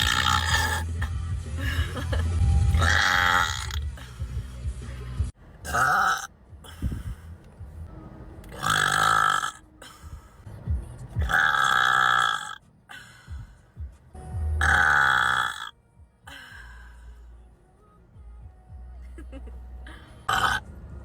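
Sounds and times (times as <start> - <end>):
person burping loudly: 0.0 - 1.0, 2.8 - 3.8, 5.7 - 6.3, 8.6 - 9.6, 11.3 - 12.6, 14.6 - 15.7, 20.3 - 20.6.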